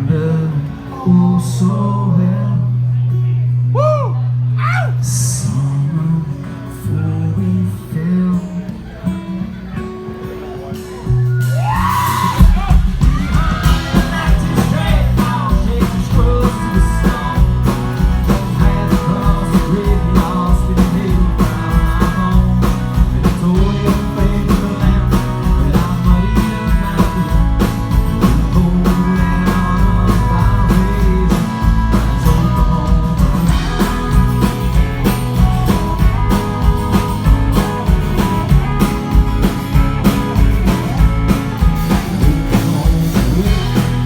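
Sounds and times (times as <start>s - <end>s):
bass: 0.0s - 44.0s
guitar lead with bending notes: 8.3s - 44.0s
steady drum beat: 11.4s - 44.0s.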